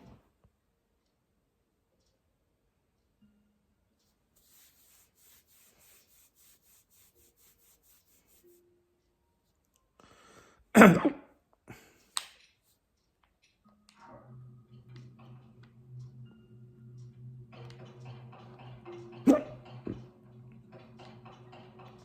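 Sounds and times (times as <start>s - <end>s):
person hiccuping: 10.8s - 11.3s, 19.3s - 19.6s.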